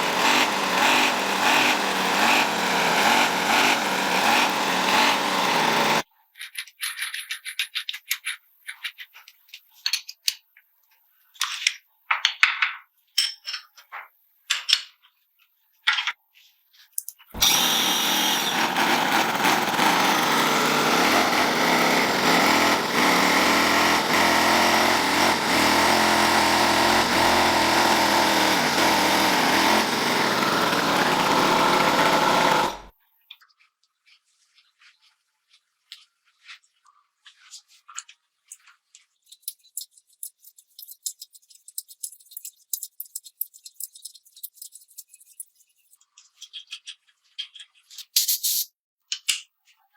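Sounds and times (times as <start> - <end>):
power tool running: 0.0 - 6.0, 17.4 - 32.9
sharp work noises: 0.0 - 6.0, 17.4 - 32.9.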